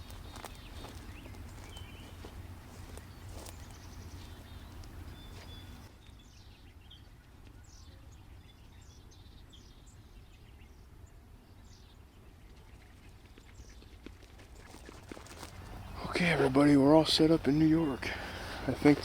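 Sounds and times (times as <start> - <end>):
steady low rumble: 0.0 - 5.9
songbirds chirping: 0.0 - 19.0.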